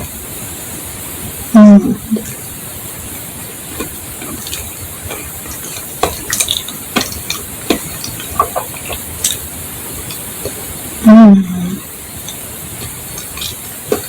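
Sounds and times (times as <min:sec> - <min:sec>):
steady hiss: 0:00.0 - 0:14.0
wet mouth eating sounds: 0:01.6 - 0:02.5, 0:03.4 - 0:14.0.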